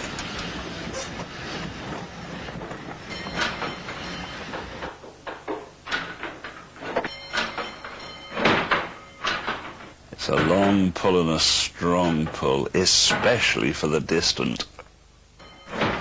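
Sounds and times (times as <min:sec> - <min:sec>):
sharp clunks and knocks: 0:00.0 - 0:10.9
train rumble and clickety-clack: 0:00.0 - 0:11.0.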